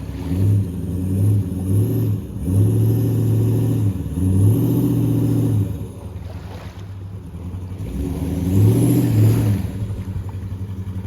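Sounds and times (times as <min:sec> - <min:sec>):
car engine revving: 0:07.3 - 0:11.0.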